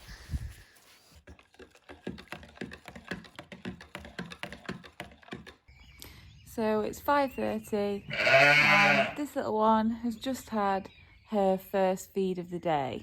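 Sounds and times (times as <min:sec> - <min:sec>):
rapid sharp clicks and taps: 0:01.8 - 0:05.6.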